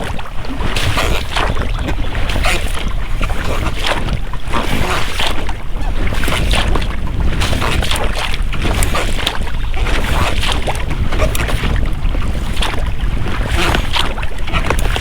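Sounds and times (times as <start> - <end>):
oars splashing in water: 0.0 - 15.0
rubber rowlocks creaking: 0.0 - 15.0
wind rumbling on microphone: 0.0 - 15.0.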